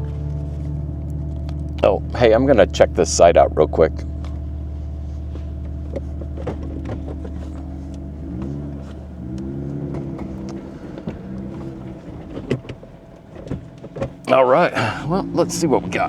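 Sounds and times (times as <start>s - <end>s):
tyres crunching over gravel: 0.0s - 16.0s
vehicle engine running slowly: 0.0s - 16.0s.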